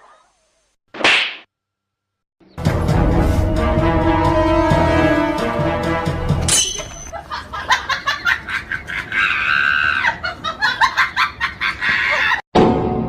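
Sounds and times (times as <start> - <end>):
music: 2.6 - 6.6
comic giggling laughter: 7.1 - 12.4.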